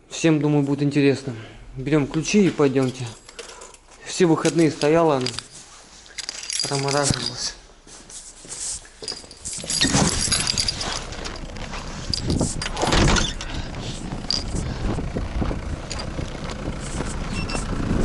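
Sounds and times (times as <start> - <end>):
rustling and handling noises: 2.1 - 15.0
keys jangling: 2.8 - 3.8, 4.4 - 7.6, 8.9 - 14.8, 15.8 - 16.2.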